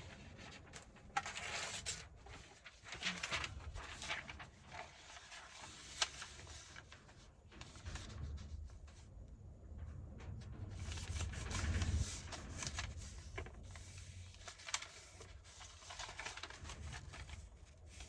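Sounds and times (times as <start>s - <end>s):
paper rustling: 0.0s - 9.1s, 10.4s - 18.0s
low rumble: 7.6s - 18.0s.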